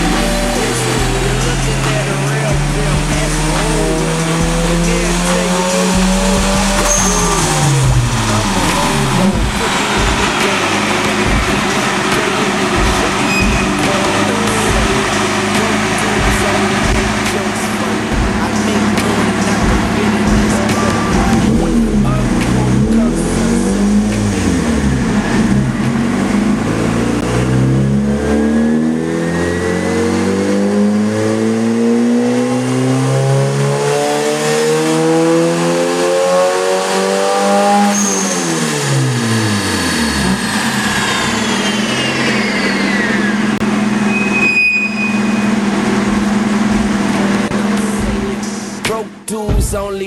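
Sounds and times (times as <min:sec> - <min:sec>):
turbo whistle: 0:00.0 - 0:17.6, 0:37.8 - 0:46.4
engine idling: 0:00.0 - 0:28.2, 0:37.9 - 0:49.3
engine revving at full throttle: 0:00.0 - 0:49.0.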